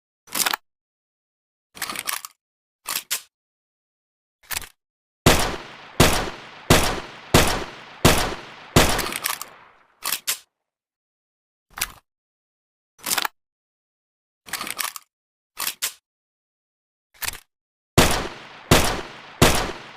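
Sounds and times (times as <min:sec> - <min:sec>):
pistol shots: 0:05.3 - 0:09.8, 0:18.0 - 0:19.9
gun handling clicks: 0:05.3 - 0:10.4.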